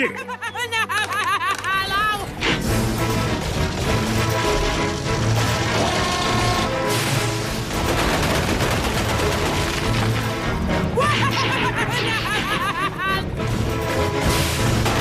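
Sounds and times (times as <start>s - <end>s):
cartoon action music: 0.0s - 15.0s
blasts and crashes: 2.5s - 8.8s.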